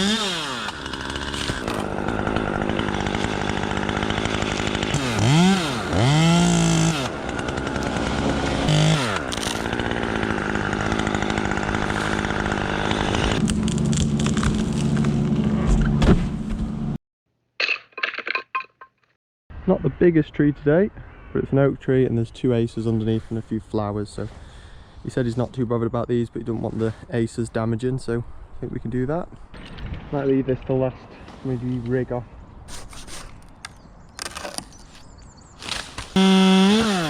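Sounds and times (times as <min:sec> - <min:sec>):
chainsaw revving: 0:00.0 - 0:15.4, 0:35.6 - 0:37.0.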